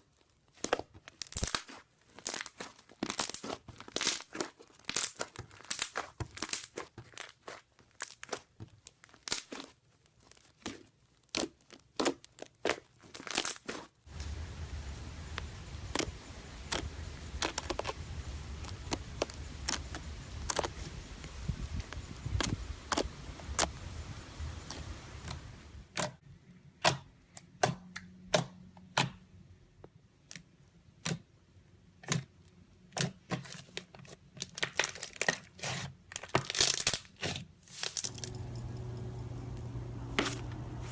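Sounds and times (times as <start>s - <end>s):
slime crackling and popping: 0.2s - 23.8s, 34.4s - 38.8s
steady low hum: 38.1s - 40.9s.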